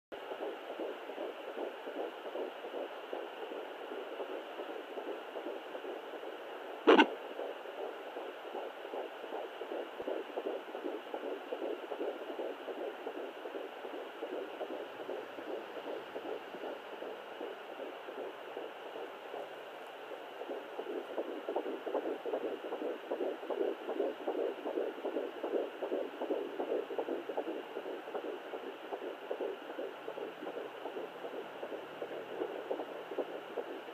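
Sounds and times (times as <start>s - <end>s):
whooshing fetal heartbeat: 0.2s - 33.9s
sharp knock: 6.9s - 7.1s.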